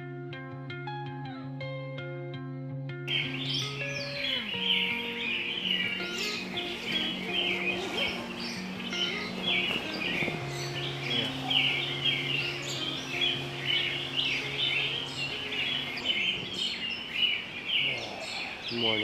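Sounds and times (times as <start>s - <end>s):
soft sustained music notes: 3.1s - 19.0s
songbirds chirping and singing: 3.1s - 19.0s.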